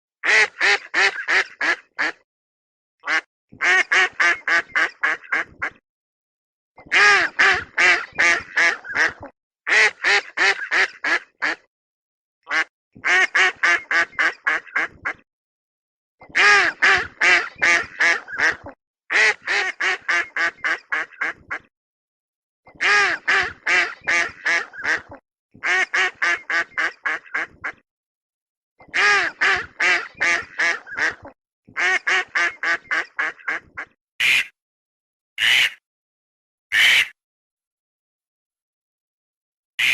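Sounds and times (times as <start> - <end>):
duck quacking harshly: 0.2 - 2.2, 3.0 - 5.8, 6.8 - 11.7, 12.5 - 15.2, 16.3 - 21.7, 22.7 - 27.8, 28.8 - 34.6, 35.4 - 35.8, 36.7 - 37.2.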